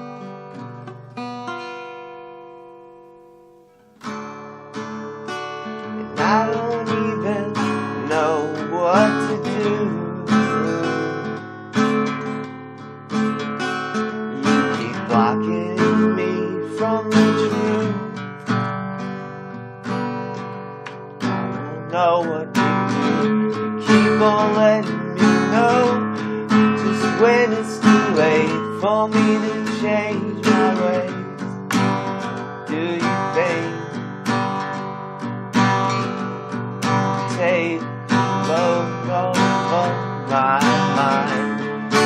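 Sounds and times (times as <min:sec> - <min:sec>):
acoustic guitar strumming chords: 0:00.0 - 0:42.0.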